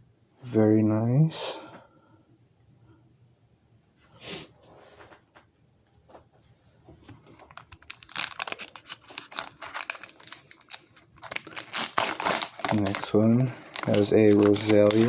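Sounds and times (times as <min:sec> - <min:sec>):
foil wrapper crinkling and tearing: 0:07.3 - 0:15.0.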